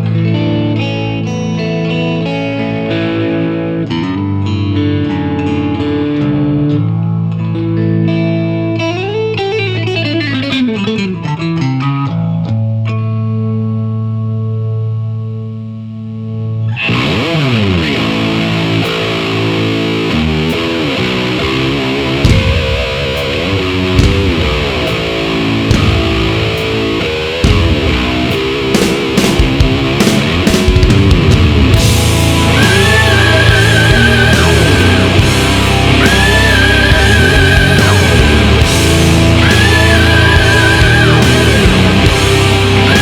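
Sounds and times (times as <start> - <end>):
distorted electric guitar: 0.0 - 43.0
heavy rock band playing: 16.7 - 43.0.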